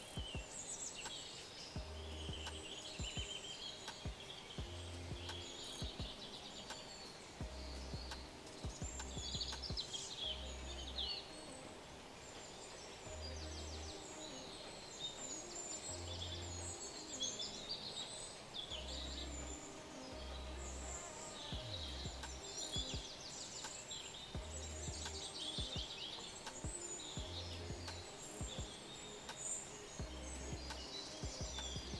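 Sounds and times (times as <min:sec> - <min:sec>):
birds chirping and trilling: 0:00.0 - 0:31.9
soft background music: 0:00.0 - 0:31.9.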